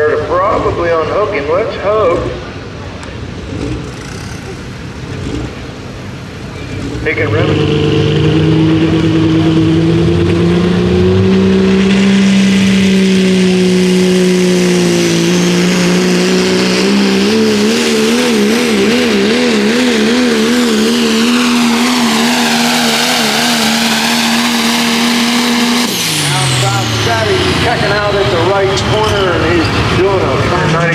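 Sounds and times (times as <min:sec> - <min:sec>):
diesel truck engine revving hard: 0:00.0 - 0:30.9
high turbo whine: 0:00.0 - 0:30.9.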